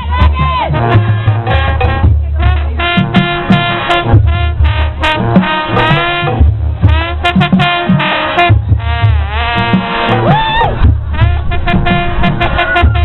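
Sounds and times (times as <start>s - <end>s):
brass band swing music: 0.0s - 13.0s
horn sliding in pitch: 9.3s - 13.0s.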